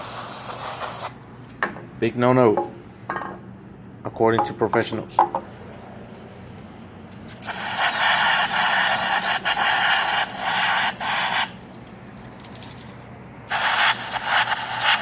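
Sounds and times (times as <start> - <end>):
aerosol spray hissing: 0.0 - 1.2, 7.4 - 11.5, 13.5 - 15.0.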